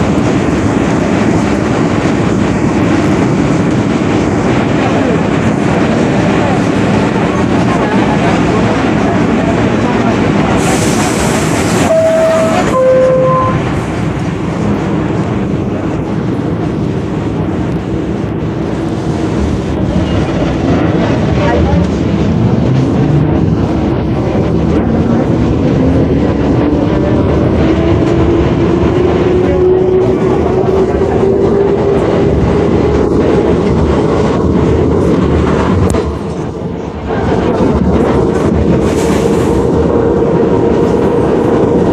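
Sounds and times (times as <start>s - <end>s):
subway wheels rumbling on rail: 0.0s - 41.9s
short steady tone: 11.8s - 13.8s
clickety-clack of track joints: 13.8s - 41.9s.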